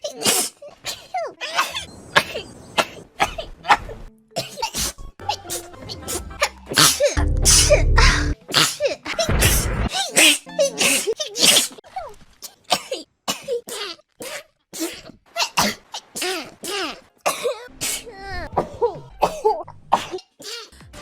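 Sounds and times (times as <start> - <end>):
women sneezing: 0.0 - 3.8, 8.5 - 11.8.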